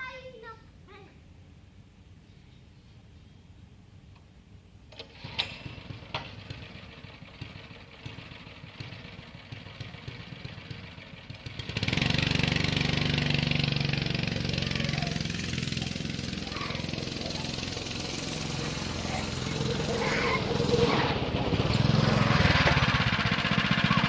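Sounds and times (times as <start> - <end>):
go-kart engine running: 4.9 - 24.0.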